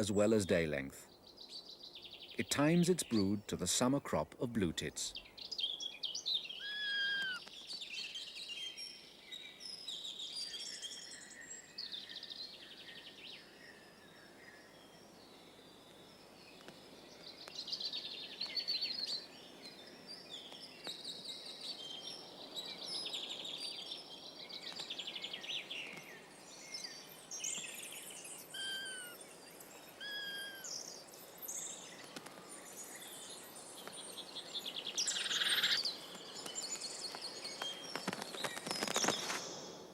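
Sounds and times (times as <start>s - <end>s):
songbirds chirping and trilling: 0.0s - 39.9s
down-slurred bird whistles: 6.6s - 7.4s, 28.5s - 29.2s, 30.0s - 30.7s.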